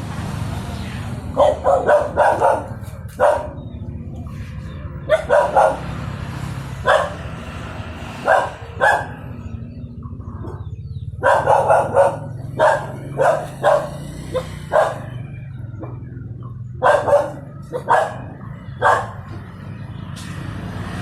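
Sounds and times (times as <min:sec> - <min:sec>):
dog barking: 0:01.3 - 0:03.7, 0:05.0 - 0:06.0, 0:06.8 - 0:07.4, 0:08.2 - 0:09.4, 0:10.4 - 0:15.3, 0:16.6 - 0:19.4.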